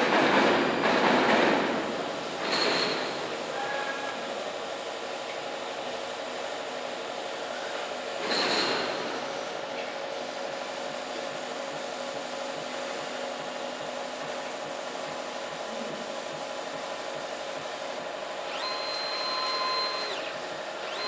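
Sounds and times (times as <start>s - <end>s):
cutting machine whirring: 18.4s - 21.0s
motor whine rising in pitch: 18.4s - 21.0s.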